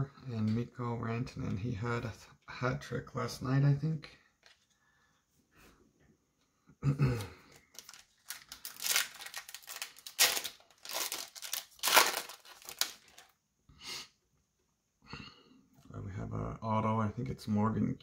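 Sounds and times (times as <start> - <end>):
foil wrapper crackling: 7.6 - 13.3.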